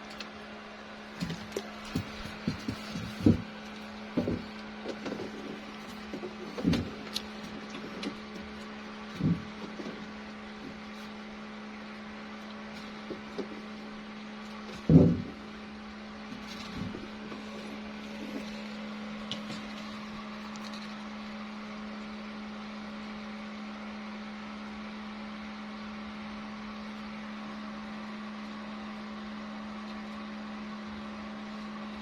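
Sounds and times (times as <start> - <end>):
knocks: 1.2 - 3.6, 4.2 - 5.5, 9.2 - 10.1, 14.7 - 15.4.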